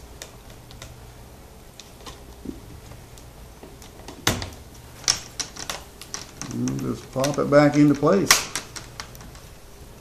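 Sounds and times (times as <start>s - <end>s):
plastic clips snapping: 3.1s - 9.4s.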